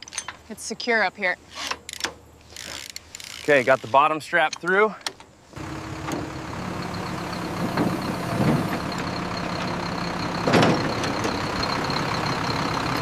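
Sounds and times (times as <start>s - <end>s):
truck engine idling: 5.6s - 13.0s.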